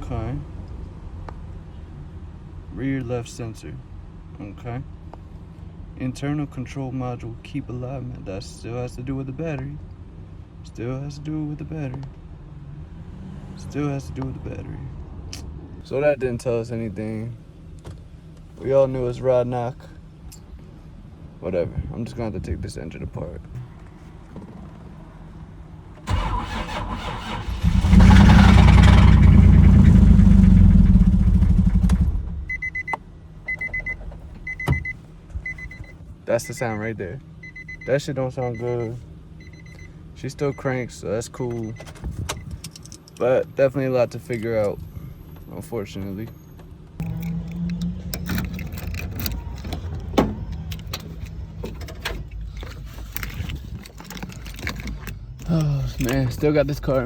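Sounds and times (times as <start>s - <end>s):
car humming: 0.0s - 57.0s
car engine cranking: 23.5s - 37.8s, 44.2s - 57.0s
beeping warning chime: 32.5s - 39.9s.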